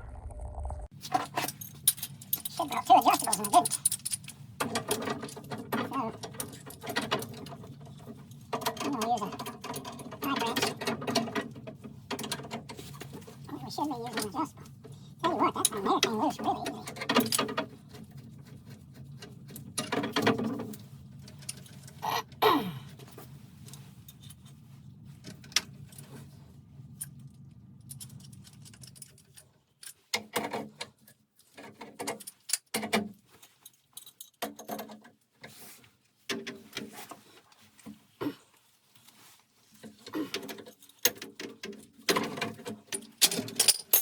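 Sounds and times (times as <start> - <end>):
low steady hum: 0.0 - 29.9
metal tools and pipe fittings clinking: 1.0 - 22.0, 23.0 - 35.6, 39.0 - 44.0.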